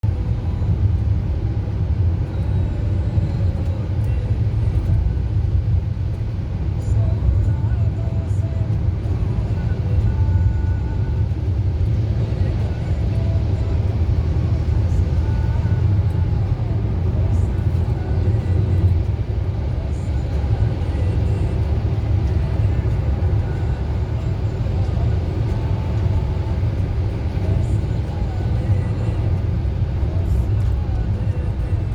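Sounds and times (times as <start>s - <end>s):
vehicle engine and road noise: 0.0s - 31.9s.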